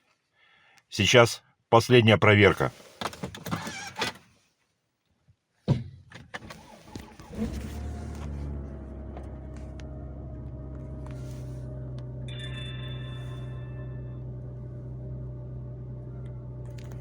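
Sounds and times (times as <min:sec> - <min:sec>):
car engine cranking and idling: 0:06.2 - 0:17.0.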